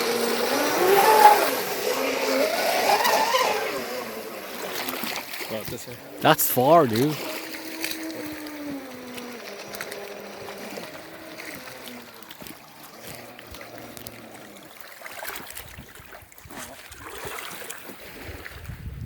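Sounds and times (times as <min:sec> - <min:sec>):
remote-control boat motor whine: 0:00.0 - 0:04.6, 0:08.5 - 0:14.3.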